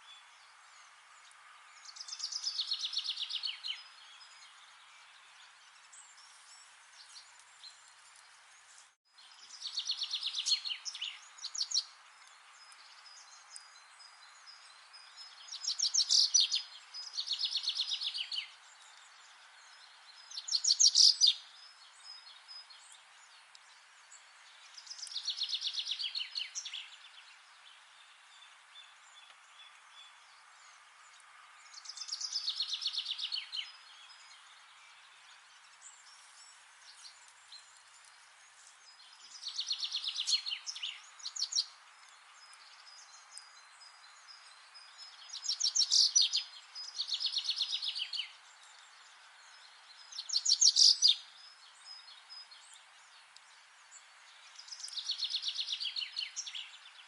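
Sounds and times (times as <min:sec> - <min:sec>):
low background hiss: 0:00.0 - 0:57.0.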